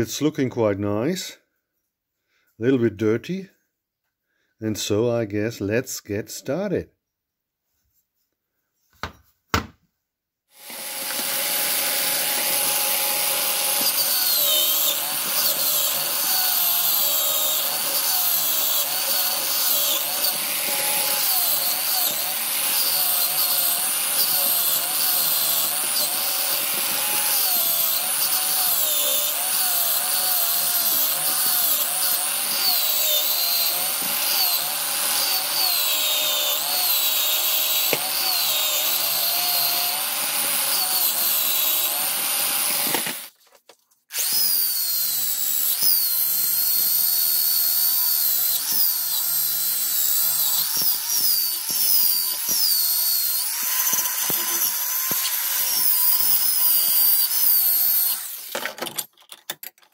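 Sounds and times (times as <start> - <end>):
power tool motor whine: 10.6 - 43.3, 44.1 - 58.7.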